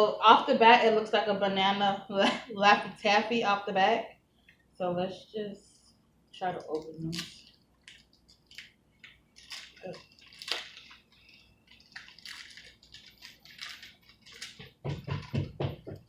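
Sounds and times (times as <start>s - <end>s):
plastic wrapper crinkling and tearing: 6.5s - 14.9s
dull handling knocks: 14.6s - 16.0s.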